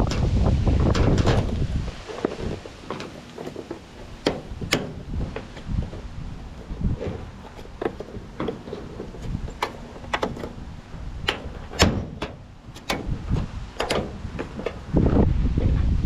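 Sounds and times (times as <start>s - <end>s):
plastic panel handled: 2.2s - 15.0s.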